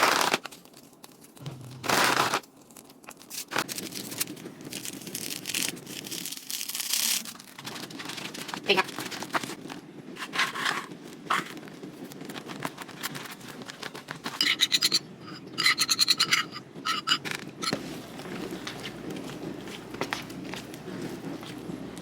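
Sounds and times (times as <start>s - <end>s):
utensil scraping a bowl: 13.8s - 21.7s.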